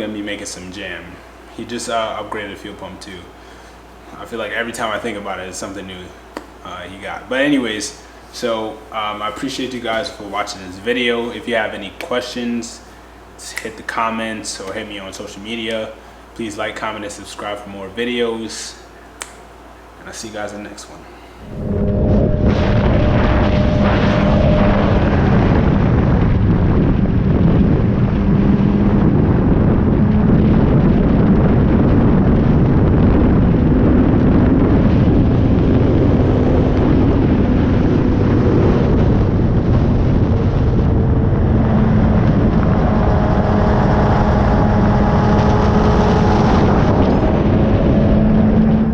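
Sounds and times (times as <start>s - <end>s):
car engine drone: 21.4s - 48.9s
road and wind noise: 21.4s - 48.9s.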